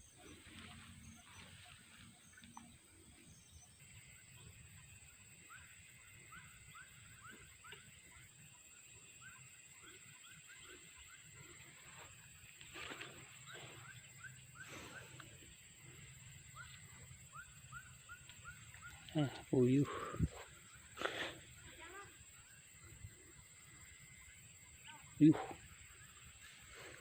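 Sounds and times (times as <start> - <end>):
high insect whine: 0.0 - 27.0
quick chirping animal calls: 5.4 - 26.9.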